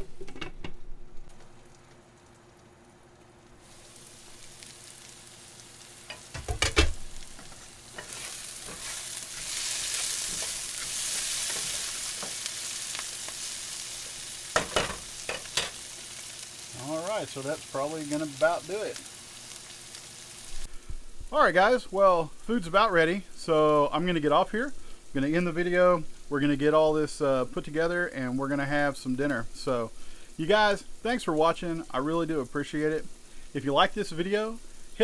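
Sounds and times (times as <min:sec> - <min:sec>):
vegetables sizzling in a skillet: 0:01.3 - 0:35.0
knocks against a pan: 0:06.1 - 0:07.0.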